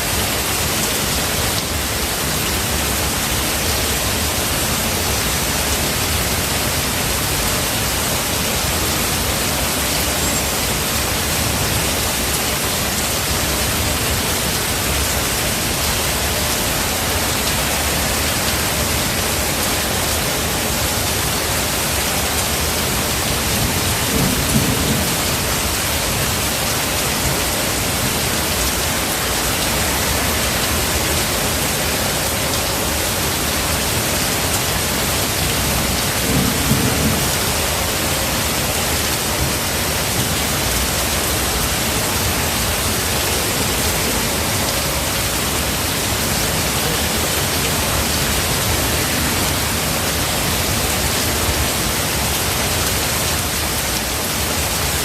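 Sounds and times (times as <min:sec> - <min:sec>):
heavy rain in forest: 0:00.0 - 0:55.0
low rolls of thunder: 0:35.7 - 0:37.8.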